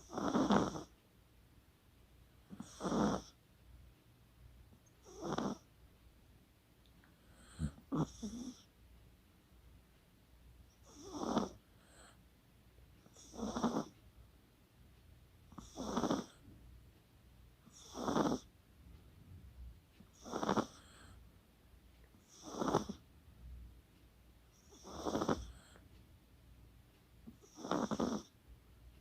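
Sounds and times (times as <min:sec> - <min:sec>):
dog snoring: 0:00.0 - 0:01.0, 0:02.4 - 0:03.4, 0:04.9 - 0:05.7, 0:07.2 - 0:08.7, 0:10.7 - 0:12.2, 0:13.0 - 0:14.0, 0:15.5 - 0:16.4, 0:17.6 - 0:18.5, 0:20.1 - 0:21.2, 0:22.2 - 0:23.1, 0:24.5 - 0:25.8, 0:27.3 - 0:28.4.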